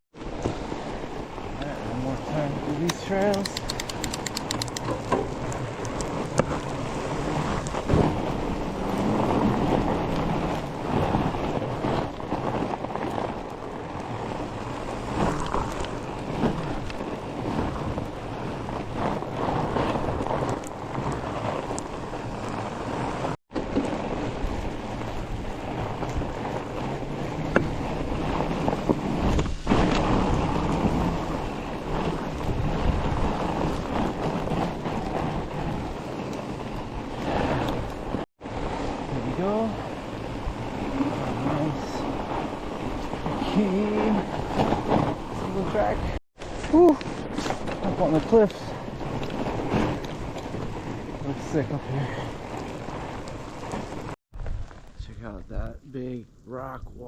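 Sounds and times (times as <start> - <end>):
wind buffeting microphone: 0.1 - 57.0
bike tyres crunching on snow: 0.2 - 56.7
bike rattles and knocks: 1.8 - 55.0.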